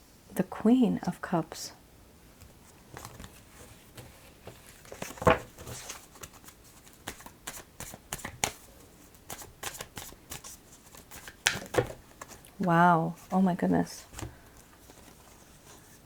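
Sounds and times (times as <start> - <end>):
cards shuffling and flicking: 4.0 - 12.5
card snap: 11.2 - 12.0.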